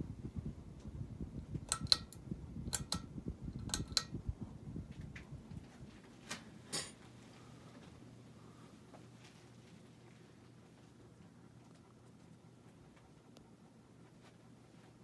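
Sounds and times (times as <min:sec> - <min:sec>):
ceiling fan rumbling: 0:00.0 - 0:15.0
low steady hum: 0:00.0 - 0:15.0
sharp clicks: 0:01.6 - 0:04.2.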